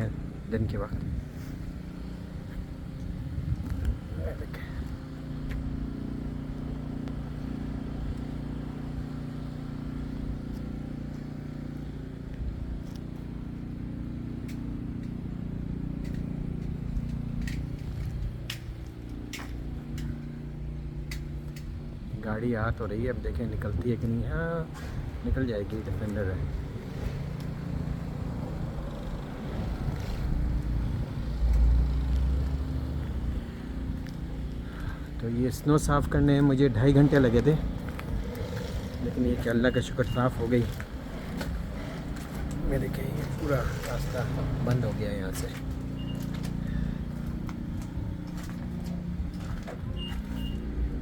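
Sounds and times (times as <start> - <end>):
car engine running: 0.0 - 51.0.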